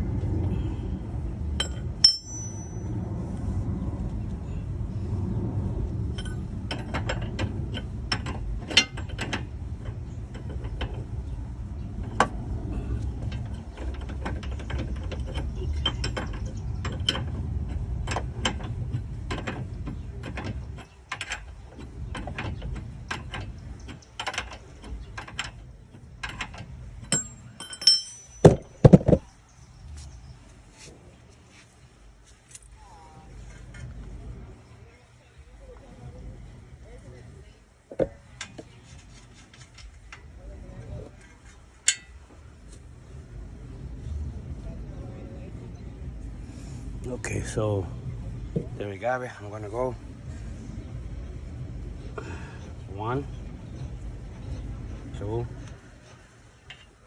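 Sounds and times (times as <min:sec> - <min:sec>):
low steady rumble: 0:00.0 - 0:57.0
metal knocks: 0:13.2 - 0:29.3.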